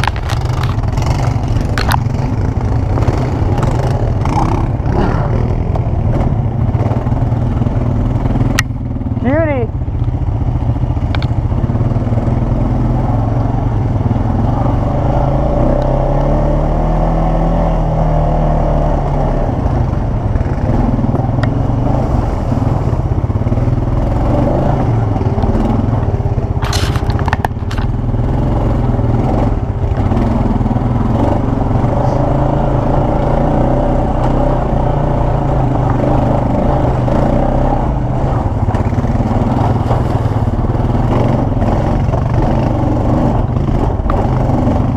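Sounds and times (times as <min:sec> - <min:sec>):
atv engine running: 0:00.0 - 0:44.9
clattering: 0:26.6 - 0:27.9.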